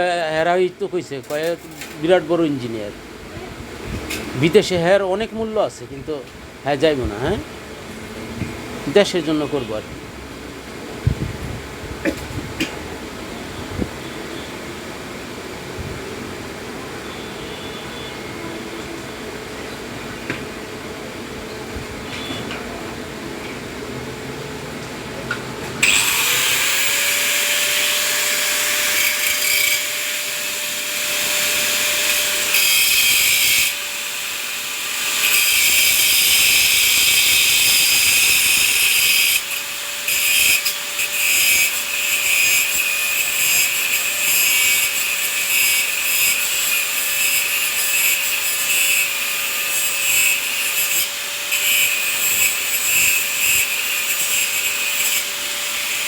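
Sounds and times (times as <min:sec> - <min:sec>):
power tool grinding: 0:01.1 - 0:02.9, 0:25.7 - 0:56.0.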